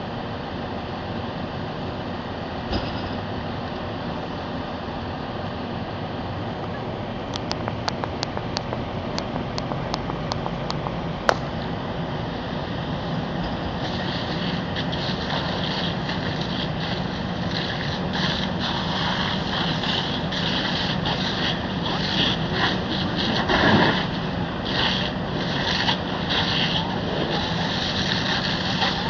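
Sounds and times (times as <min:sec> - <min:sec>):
engine hum: 0:00.0 - 0:29.0
rushing hiss bursts: 0:13.1 - 0:29.0.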